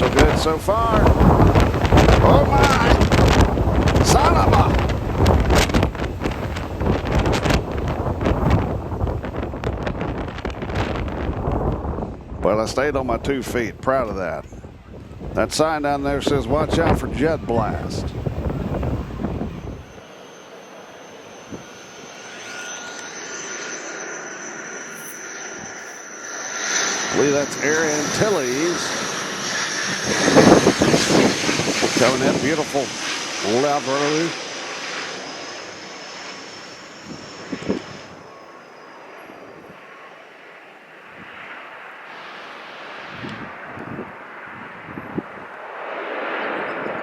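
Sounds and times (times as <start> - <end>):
airliner engines whining: 0.0 - 47.0.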